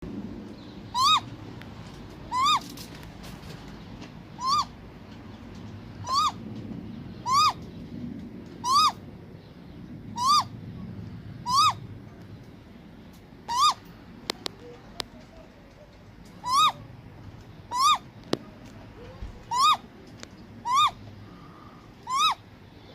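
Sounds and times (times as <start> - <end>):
owl whistled calls: 0.9 - 1.3, 2.3 - 2.7, 4.4 - 4.7, 6.0 - 6.4, 7.2 - 7.6, 8.6 - 9.0, 10.1 - 10.5, 11.4 - 11.8, 13.5 - 13.8, 16.4 - 16.8, 17.7 - 18.1, 19.5 - 19.8, 20.6 - 21.0, 22.0 - 22.4.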